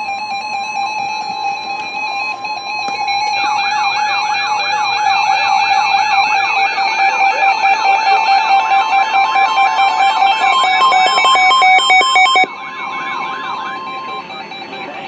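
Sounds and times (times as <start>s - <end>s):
electronic synthesized music: 0.0s - 15.0s
rapid siren-like warble: 0.0s - 15.0s.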